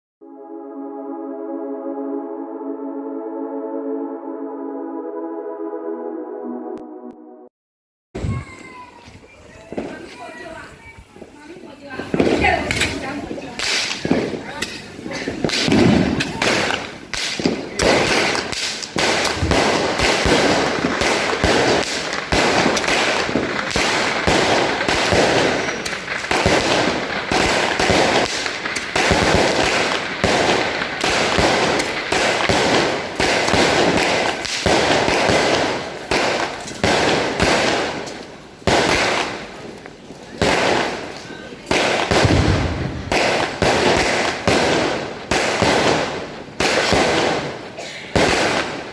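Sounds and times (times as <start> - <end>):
fireworks launch thumps and bursts: 12.1 - 48.9.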